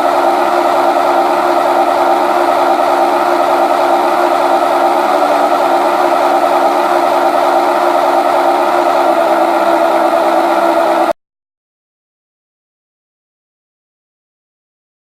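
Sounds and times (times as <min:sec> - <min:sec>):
simulated turboprop engine: 0:00.0 - 0:11.2.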